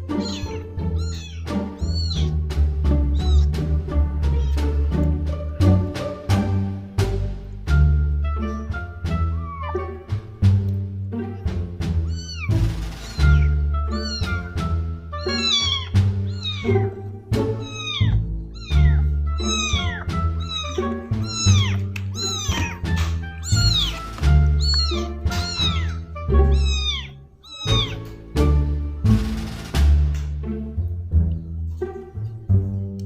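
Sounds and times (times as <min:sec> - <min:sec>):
kittens meowing: 0:00.0 - 0:04.8, 0:08.3 - 0:09.8, 0:12.0 - 0:28.3
background music with bass line: 0:00.0 - 0:27.0, 0:27.6 - 0:33.0.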